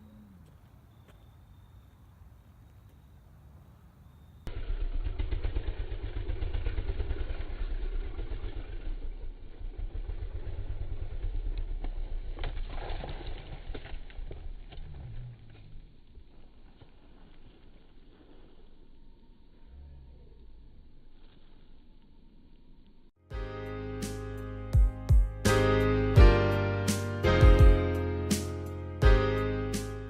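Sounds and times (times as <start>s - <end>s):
dirt bike engine at low revs: 4.5s - 13.6s.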